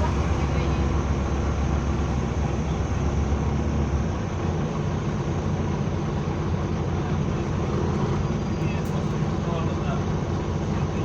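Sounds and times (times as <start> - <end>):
bus engine rumble: 0.0 - 11.0
road noise hiss: 0.0 - 11.0.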